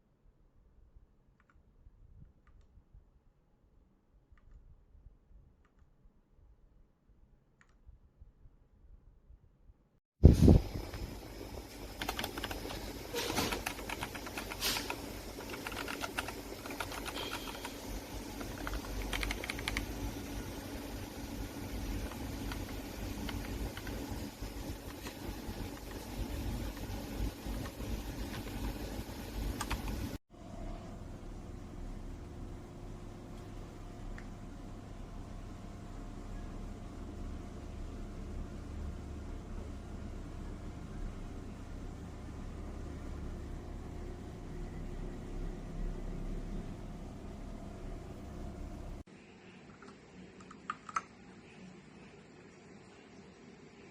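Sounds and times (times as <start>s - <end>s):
steady low hum: 0.0s - 53.9s
mechanical keyboard typing: 12.0s - 20.0s, 22.0s - 24.1s, 29.5s - 30.1s, 49.8s - 51.1s.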